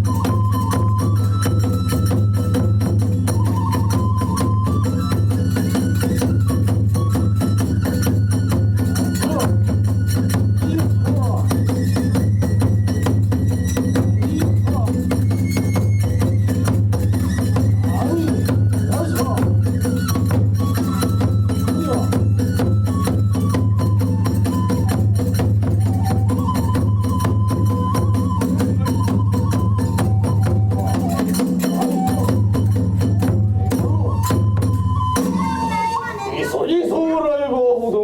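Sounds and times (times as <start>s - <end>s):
drums beating rapidly: 0.0s - 36.8s
bamboo flute melody: 0.0s - 37.3s
hand cymbals clashing: 5.1s - 26.2s, 27.6s - 33.5s.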